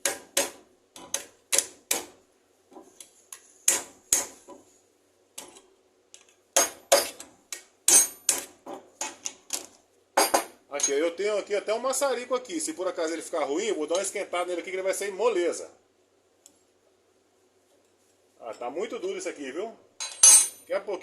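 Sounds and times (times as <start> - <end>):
metal tool clicks and clinks: 20.0 - 20.7.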